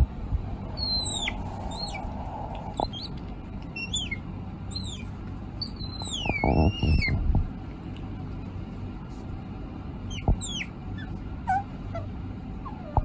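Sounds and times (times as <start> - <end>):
low rumble: 0.0 - 5.6, 6.3 - 9.6
small animal squeaky calls: 0.7 - 7.2, 10.1 - 13.0.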